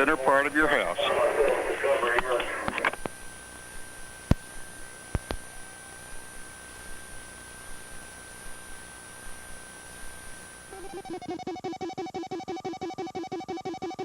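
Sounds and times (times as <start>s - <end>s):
faint electronic tone: 10.6s - 14.0s.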